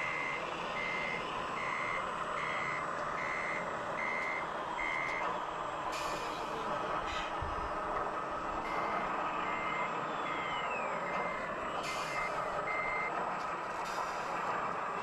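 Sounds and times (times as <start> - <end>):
reversing beeper: 0.0 - 5.3, 8.6 - 13.1
falling whistles: 9.5 - 10.9.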